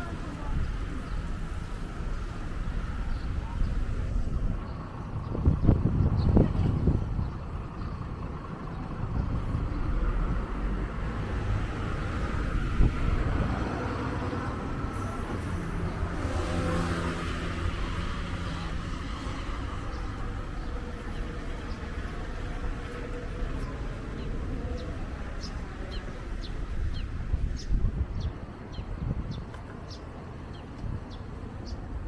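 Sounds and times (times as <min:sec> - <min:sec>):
road traffic passing: 0:00.0 - 0:32.0
wind buffeting microphone: 0:00.0 - 0:32.0
vehicle engine revving: 0:09.5 - 0:26.6.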